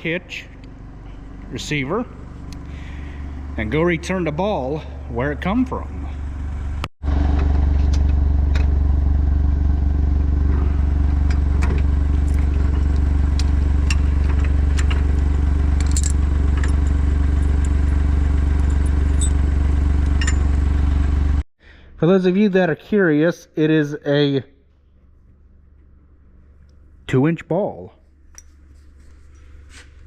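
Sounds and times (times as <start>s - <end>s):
vehicle engine droning: 0.0s - 21.4s.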